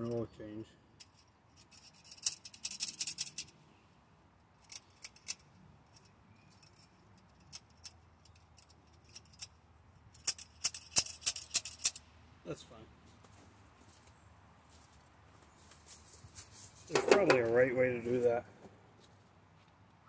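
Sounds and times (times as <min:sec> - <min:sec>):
socket ratchet clicking: 0:01.0 - 0:03.5, 0:10.1 - 0:12.0.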